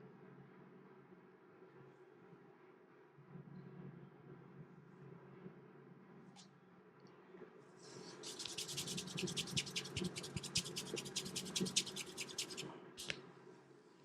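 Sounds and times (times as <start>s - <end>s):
hands scratching in massage: 7.9s - 13.2s.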